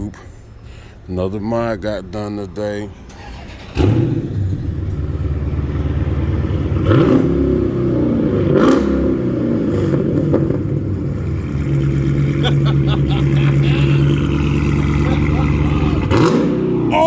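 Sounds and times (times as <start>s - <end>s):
loud car engine idling and revving: 1.6s - 17.0s.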